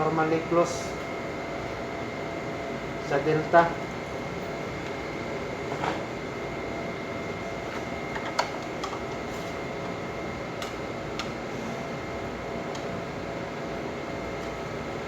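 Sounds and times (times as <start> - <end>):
room hum: 0.0 - 15.0.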